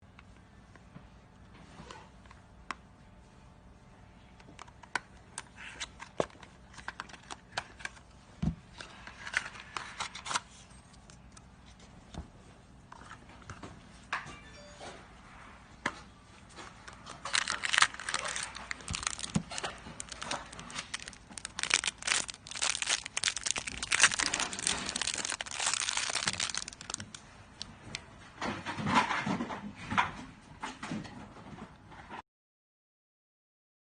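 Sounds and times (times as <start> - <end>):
material crinkling and rustling: 16.4 - 28.0.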